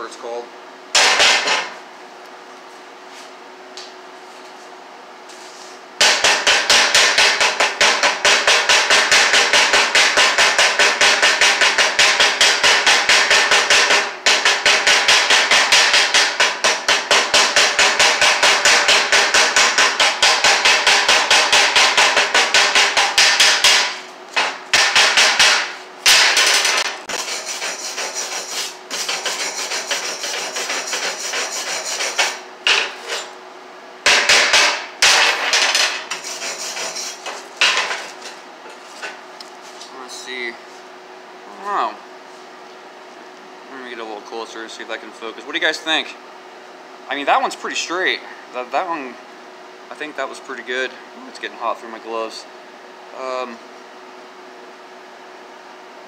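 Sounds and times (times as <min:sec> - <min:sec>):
hammer tapping metal: 0:06.0 - 0:27.0, 0:34.1 - 0:36.0.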